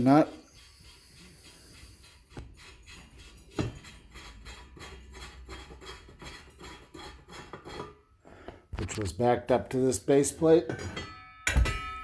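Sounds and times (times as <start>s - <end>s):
metal parts rubbing and scraping: 0.0s - 8.0s
metal knocks: 10.7s - 12.0s.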